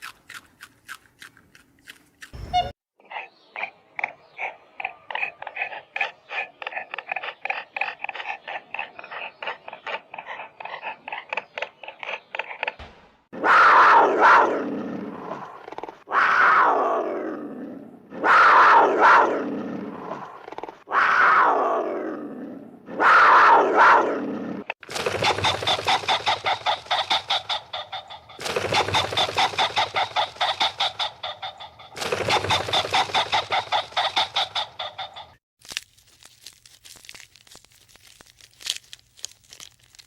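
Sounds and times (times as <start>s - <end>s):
rapid pulsing animal chatter: 3.1s - 12.8s, 24.9s - 35.4s
loud falling animal calls: 24.8s - 35.4s.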